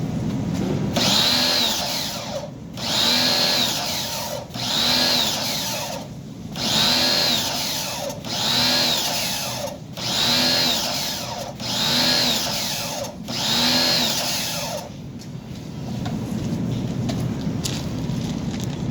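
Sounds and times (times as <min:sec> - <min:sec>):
power tool motor whine: 0:01.0 - 0:14.9.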